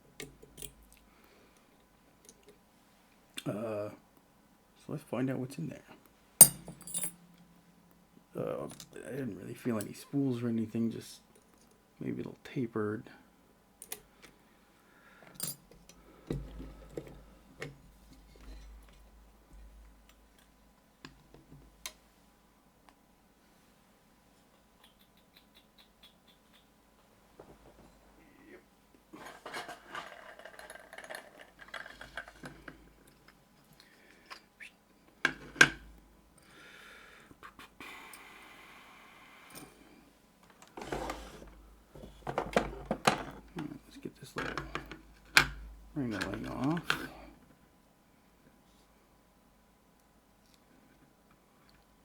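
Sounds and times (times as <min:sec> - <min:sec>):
steady scraping hiss: 0:04.8 - 0:06.4, 0:07.1 - 0:13.4, 0:36.4 - 0:42.3
low hum: 0:06.4 - 0:09.6
metal clicks and rattles of tools: 0:29.2 - 0:33.4.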